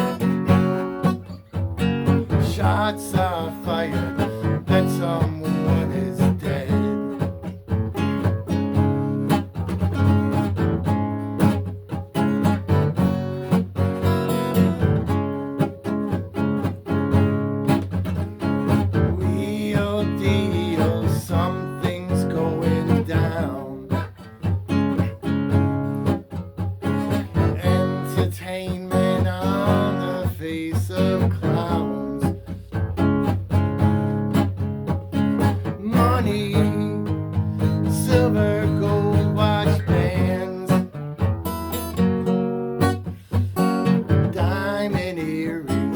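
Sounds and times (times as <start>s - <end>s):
acoustic guitar music: 0.0s - 45.9s.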